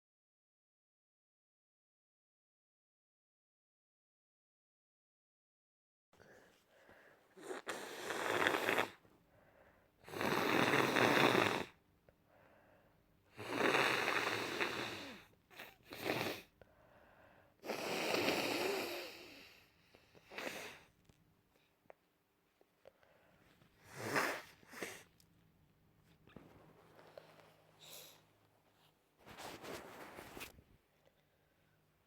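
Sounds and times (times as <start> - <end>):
person blowing nose: 7.4 - 9.0, 13.4 - 16.5, 17.6 - 19.3, 20.3 - 20.9, 23.8 - 25.1.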